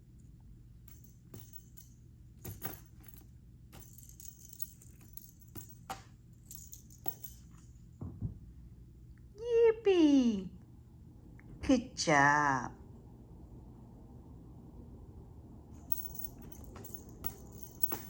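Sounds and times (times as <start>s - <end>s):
cat toy jingling and clicking: 0.9s - 3.2s, 3.8s - 7.6s, 15.9s - 18.0s.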